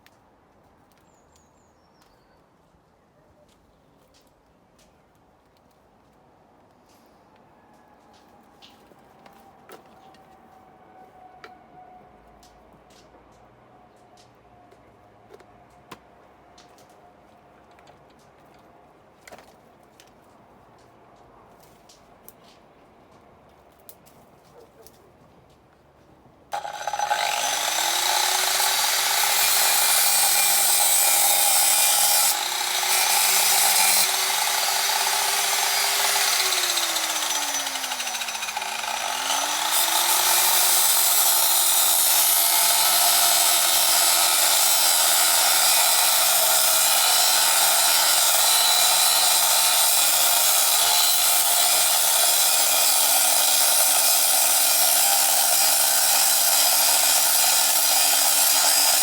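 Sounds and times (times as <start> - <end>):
angle grinder cutting metal: 26.6 - 59.0.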